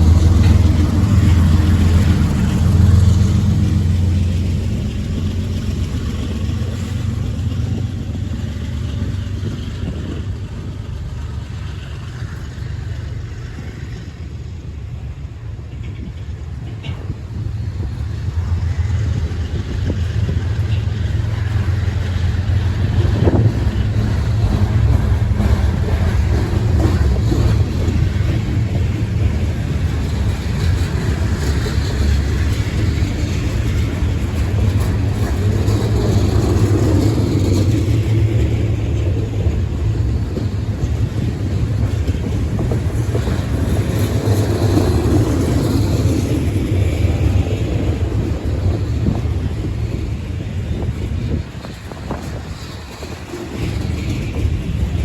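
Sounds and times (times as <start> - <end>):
freight train rumbling on rails: 0.0 - 55.0.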